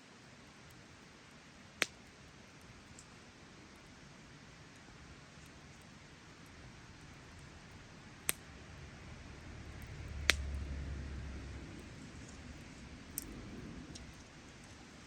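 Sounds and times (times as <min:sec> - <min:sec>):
campfire crackling: 0:00.2 - 0:15.0
sharp pops of fire: 0:01.8 - 0:02.2, 0:08.2 - 0:08.6, 0:09.8 - 0:10.7, 0:12.5 - 0:14.2
low rumble: 0:08.6 - 0:14.4.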